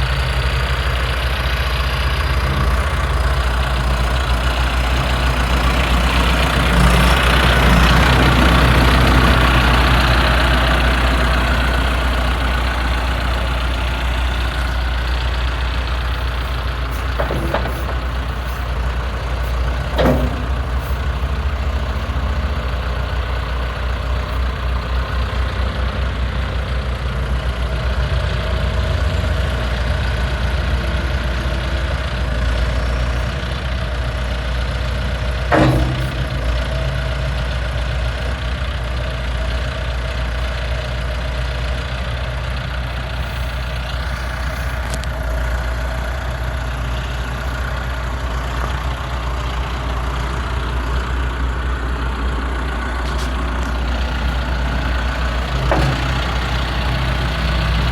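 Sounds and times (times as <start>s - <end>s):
diesel engine running: 0.0s - 57.9s
short knocks: 16.3s - 22.1s, 35.5s - 37.0s, 53.0s - 57.9s.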